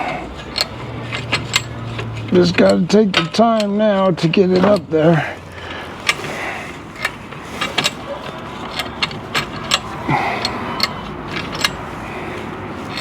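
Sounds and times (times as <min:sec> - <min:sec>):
metallic clicks and taps of hand tools: 0:00.4 - 0:05.0, 0:08.6 - 0:11.9.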